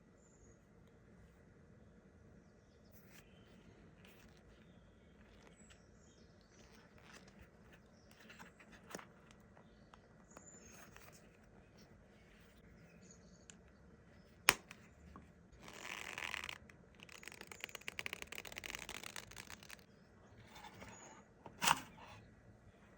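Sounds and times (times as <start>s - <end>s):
leather cardholder rustling: 15.6s - 19.8s.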